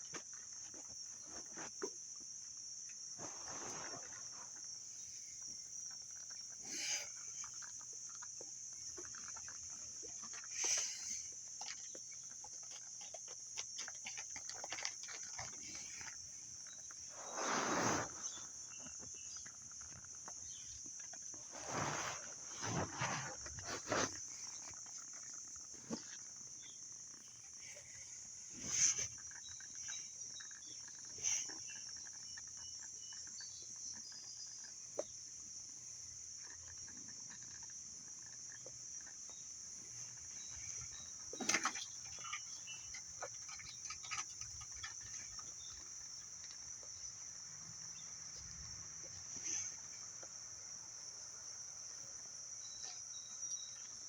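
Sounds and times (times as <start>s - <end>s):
steady high-pitched hiss: 0.0s - 54.0s
kittens playing: 39.0s - 50.5s.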